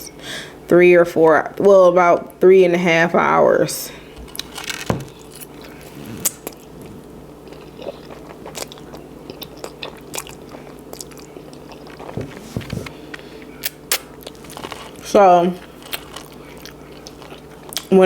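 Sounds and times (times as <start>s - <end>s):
person chewing food: 4.2s - 17.9s.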